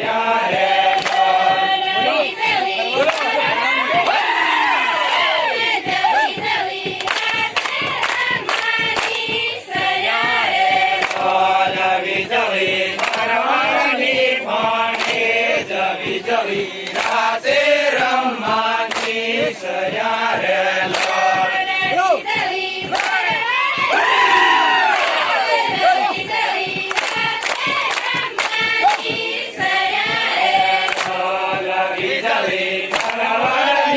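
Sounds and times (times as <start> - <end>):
crowd chanting and singing: 0.0 - 33.9
sharp clicks or claps: 0.5 - 1.6, 2.4 - 4.2, 6.9 - 15.4, 16.0 - 17.4, 18.0 - 19.5, 20.4 - 23.4, 26.2 - 29.4, 30.0 - 33.8.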